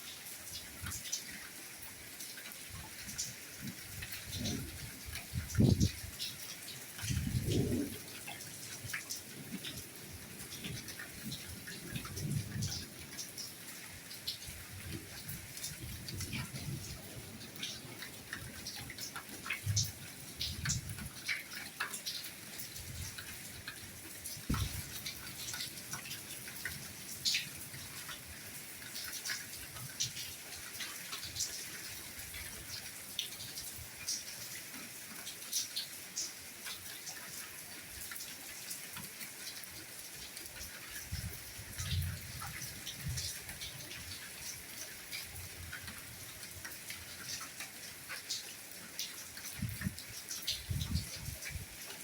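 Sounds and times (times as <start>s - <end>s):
raindrops ticking and pattering: 0.0s - 52.0s
rain hissing: 2.2s - 34.2s.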